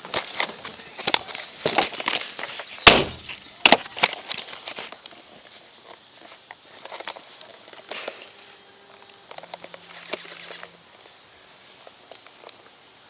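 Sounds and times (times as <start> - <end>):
footsteps crunching through dry leaves: 0.0 - 13.0
sharp loud cracks: 2.8 - 4.2.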